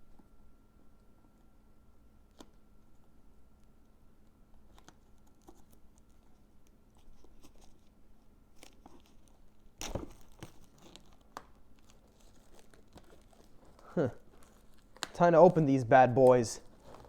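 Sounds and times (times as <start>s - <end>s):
plastic wrap crinkling and tearing: 8.5s - 17.0s.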